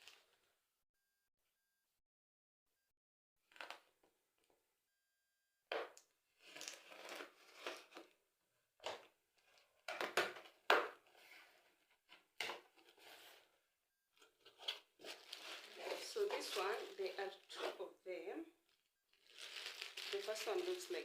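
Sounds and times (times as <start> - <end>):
packaging rustling and scraping: 6.4 - 8.1, 14.2 - 17.9, 18.7 - 21.0.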